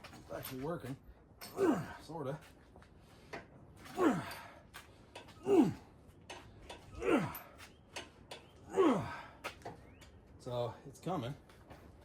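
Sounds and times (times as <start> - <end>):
man grunting with effort: 1.5 - 2.0, 3.9 - 4.5, 5.4 - 5.9, 7.0 - 7.5, 8.7 - 9.4.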